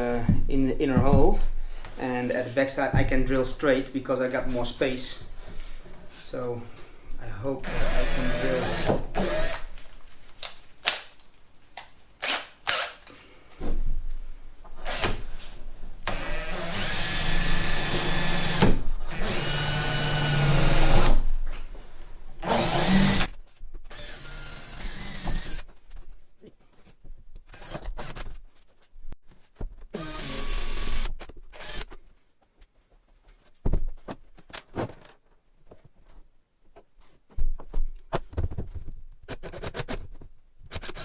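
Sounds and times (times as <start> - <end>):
electric drill boring plywood: 7.6 - 9.7, 14.9 - 15.2, 16.0 - 21.3, 22.4 - 23.3, 23.9 - 25.6, 30.0 - 31.9, 40.7 - 41.0
handling noises: 9.1 - 16.0.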